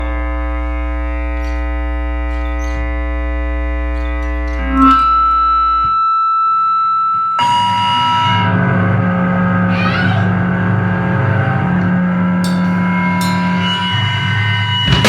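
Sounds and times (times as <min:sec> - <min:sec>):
rising squeal: 0:00.0 - 0:06.9, 0:09.6 - 0:15.0
sharp high hits: 0:12.4 - 0:15.0
feedback tone: 0:12.5 - 0:14.7.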